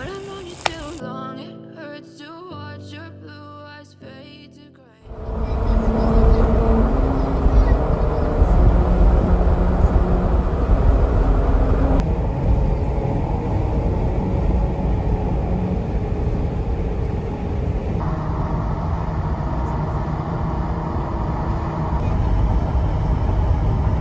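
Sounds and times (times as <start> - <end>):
vehicle engine and road noise: 5.1 - 24.0.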